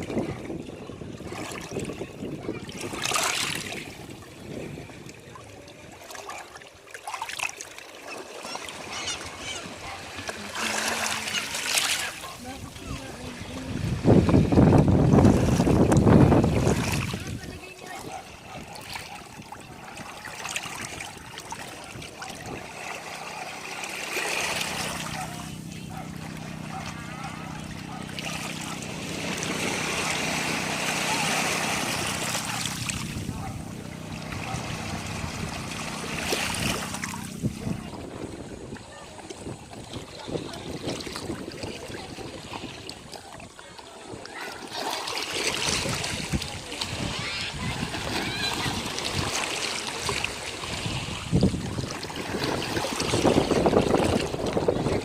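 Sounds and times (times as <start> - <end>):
seawater washing along shore: 0.0 - 55.0.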